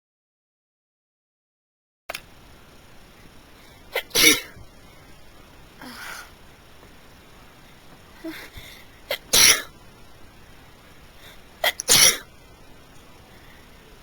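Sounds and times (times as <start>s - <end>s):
person sneezing: 3.9s - 4.5s, 8.2s - 9.7s, 11.6s - 12.3s.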